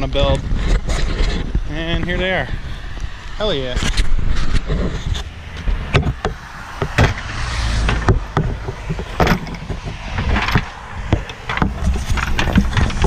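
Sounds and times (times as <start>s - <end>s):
low rumble: 0.3s - 13.0s
metal bed frames clanking: 7.9s - 10.7s.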